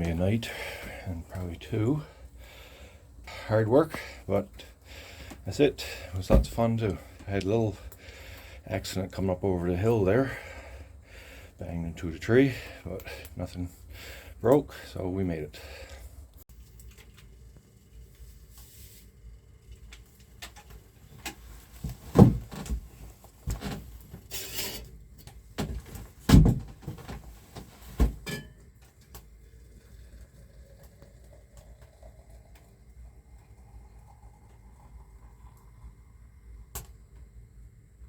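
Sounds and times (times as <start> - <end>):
knocks and thumps: 21.8 - 23.9, 25.6 - 28.3.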